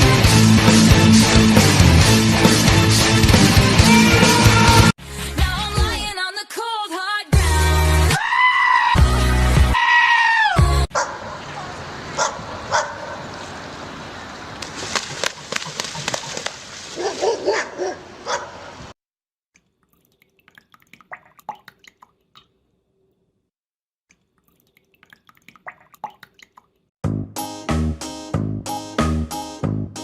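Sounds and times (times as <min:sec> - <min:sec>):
animal calls and yelps: 0:08.2 - 0:09.0, 0:09.8 - 0:13.2.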